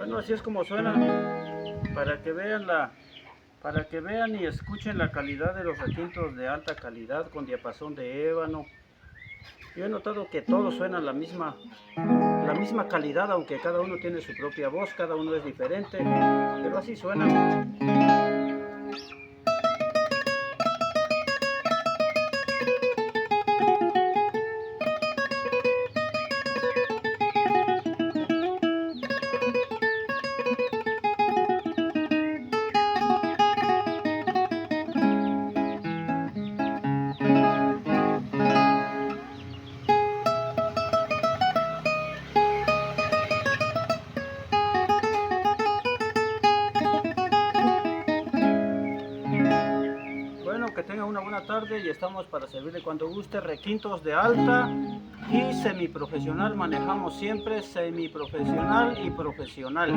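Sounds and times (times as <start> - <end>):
fast picked guitar melody: 0.0 - 3.0, 10.1 - 59.9
guitar chord ringing: 10.5 - 13.2, 16.0 - 50.8, 54.2 - 57.7.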